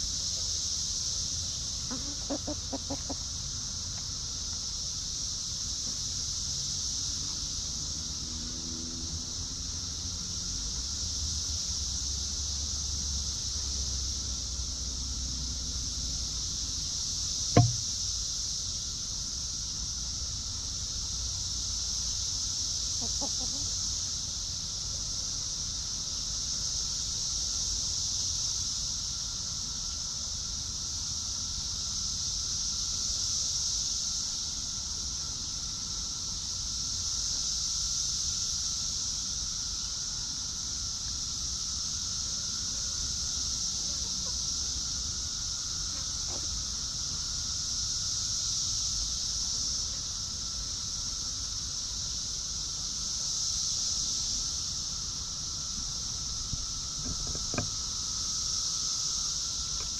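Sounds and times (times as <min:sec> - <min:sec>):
high-pitched insect chorus: 0:00.0 - 0:59.9
hens clucking: 0:01.9 - 0:03.3
sharp knock: 0:17.6 - 0:17.9, 0:57.0 - 0:57.7.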